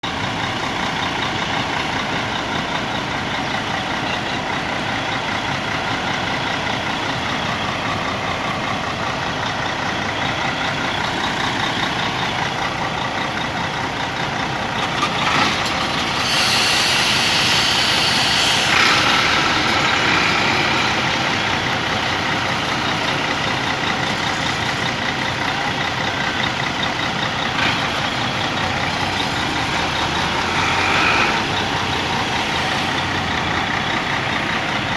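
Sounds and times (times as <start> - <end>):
diesel engine running: 0.0 - 34.9
compressed air hiss: 16.0 - 21.8.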